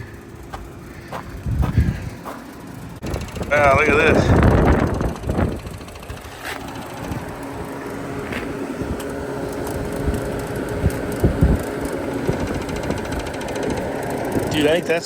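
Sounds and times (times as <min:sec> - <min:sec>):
fan motor humming: 0:00.0 - 0:15.0.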